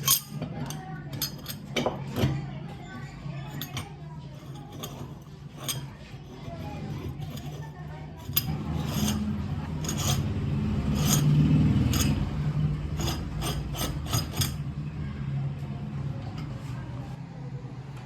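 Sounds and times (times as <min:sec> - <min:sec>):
metal parts rasping and rubbing: 0:00.0 - 0:02.4, 0:03.4 - 0:14.7.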